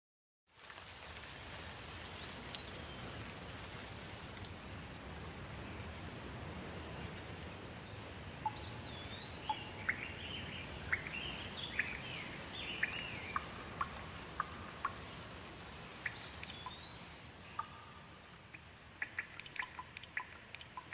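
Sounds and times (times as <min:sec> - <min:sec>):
steady rain hiss: 0:00.5 - 0:20.9
birds whistling and chipping: 0:07.9 - 0:18.4.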